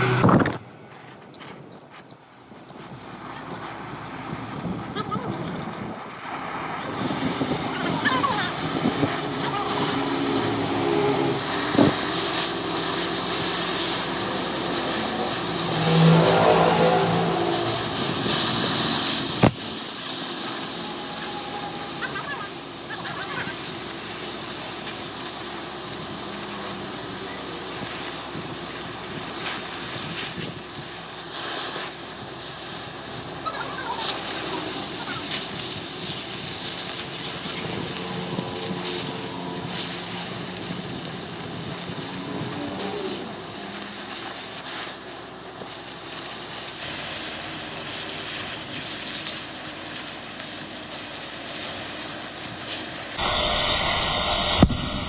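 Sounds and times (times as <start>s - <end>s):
steady hissing noise: 6.4s - 53.2s.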